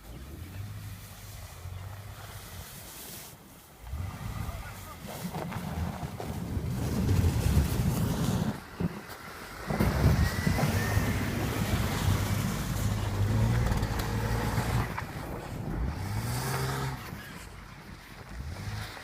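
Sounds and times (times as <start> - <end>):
car engine running and revving: 0.0 - 2.7, 9.5 - 19.0.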